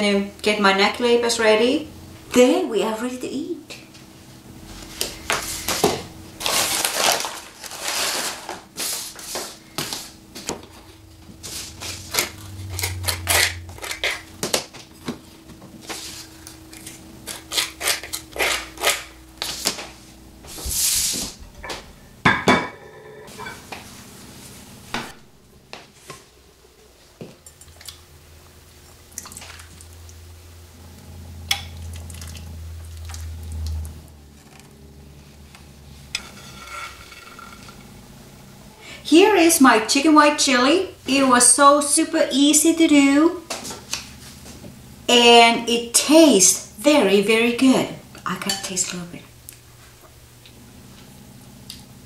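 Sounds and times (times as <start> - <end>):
low hum: 9.6 - 52.0
dishes and cutlery clinking: 21.6 - 23.7, 48.4 - 49.0.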